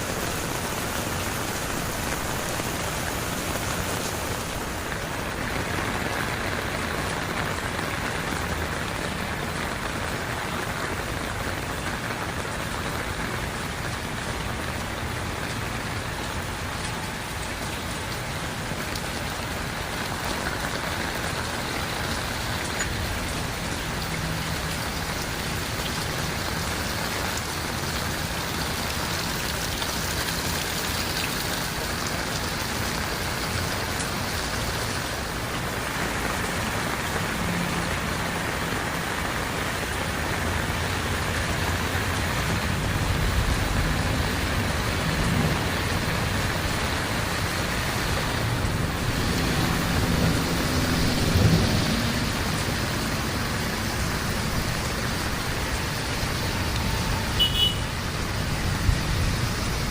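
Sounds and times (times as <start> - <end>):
heavy rain pattering: 0.0 - 59.9.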